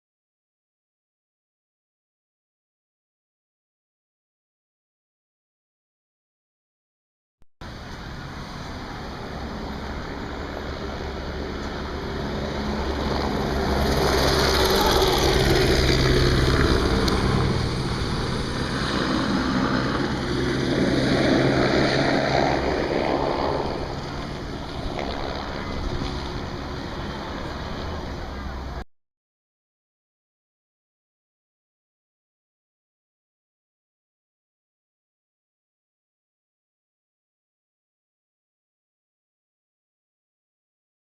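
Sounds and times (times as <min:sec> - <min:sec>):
helicopter rotor beating: 0:07.7 - 0:28.8.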